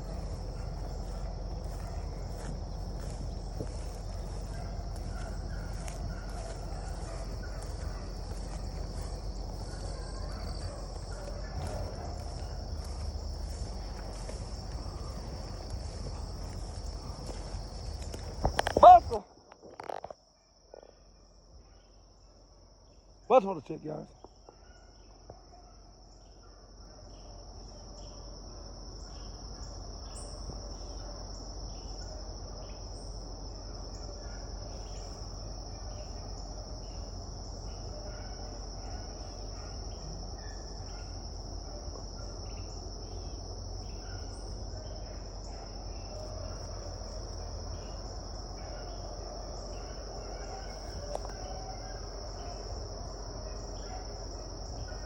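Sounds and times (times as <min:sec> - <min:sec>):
low background rumble: 0:00.0 - 0:18.7
crickets and insects chirping: 0:00.0 - 0:55.0.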